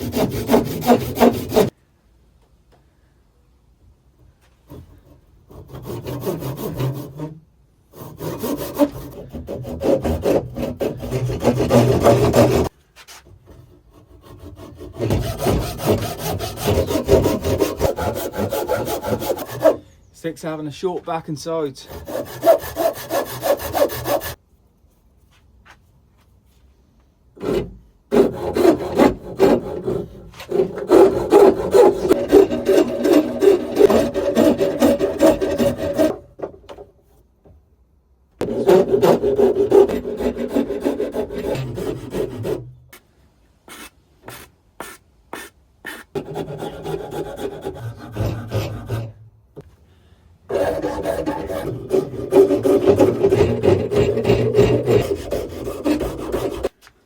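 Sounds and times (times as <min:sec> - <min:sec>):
rasp scraping wood: 0:00.0 - 0:01.7, 0:04.7 - 0:19.8, 0:21.8 - 0:24.4, 0:27.4 - 0:36.3, 0:38.4 - 0:42.8, 0:43.7 - 0:49.2, 0:50.5 - 0:56.9.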